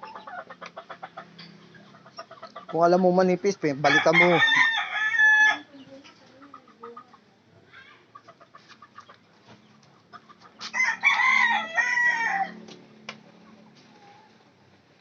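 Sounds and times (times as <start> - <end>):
rooster crowing: 3.8 - 5.7, 10.7 - 12.6.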